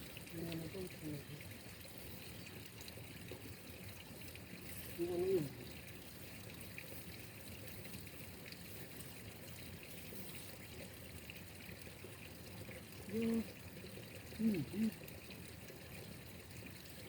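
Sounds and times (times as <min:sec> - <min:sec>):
water trickling: 0:00.0 - 0:17.0.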